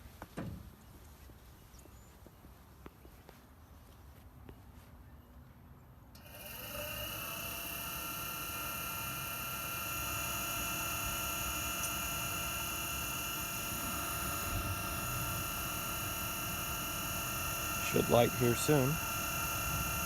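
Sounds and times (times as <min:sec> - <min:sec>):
blower motor whining: 0:06.2 - 0:20.0.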